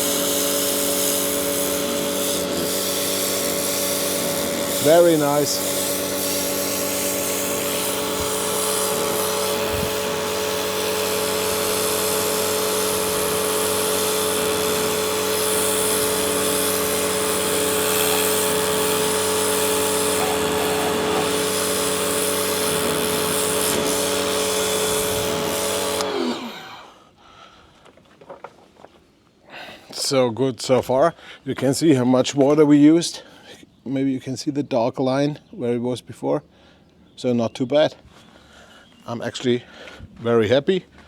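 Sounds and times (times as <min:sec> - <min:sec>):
water jet hissing: 0:00.0 - 0:26.7
pressure washer motor whine: 0:00.0 - 0:27.0.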